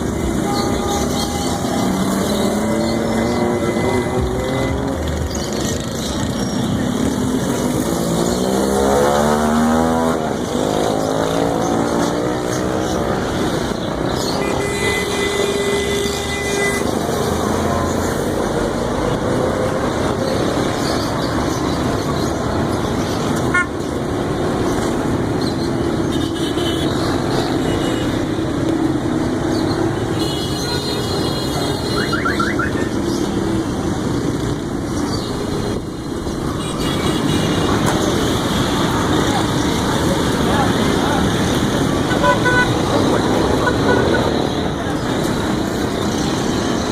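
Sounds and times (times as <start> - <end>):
motorcycles and cars passing: 0.0 - 46.9
car horn: 0.1 - 5.0, 14.4 - 17.0, 23.5 - 23.8, 30.1 - 32.9, 42.0 - 42.9, 43.5 - 44.4
engine revving: 1.1 - 13.6.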